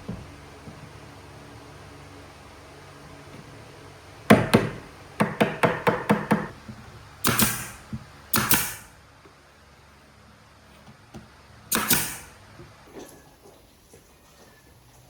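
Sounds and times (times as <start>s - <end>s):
hammer striking wood: 4.3s - 6.6s, 7.2s - 8.9s.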